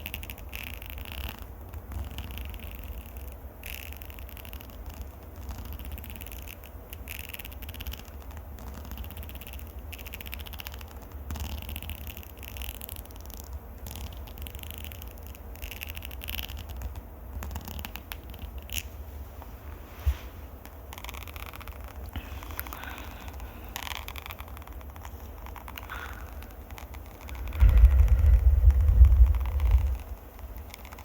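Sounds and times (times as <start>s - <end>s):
fingers scratching on microphone: 0.0s - 19.0s, 20.0s - 31.0s
low handling rumble: 27.2s - 30.6s.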